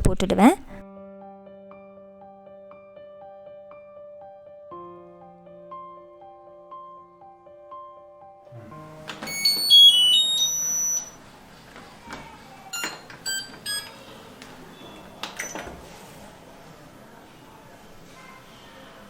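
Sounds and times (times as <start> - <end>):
soft piano music: 0.8 - 11.5
high electronic beeps: 9.3 - 11.2, 12.8 - 14.0
button clicks: 12.8 - 13.9.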